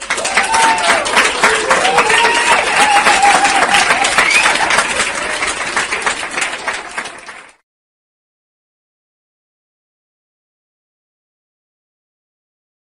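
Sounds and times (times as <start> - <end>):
applause: 0.0 - 7.6.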